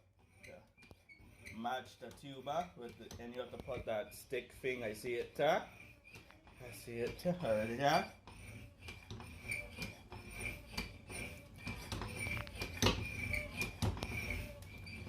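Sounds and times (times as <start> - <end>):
clicks and knocks of bicycle repair: 0.3 - 3.9, 8.1 - 14.7.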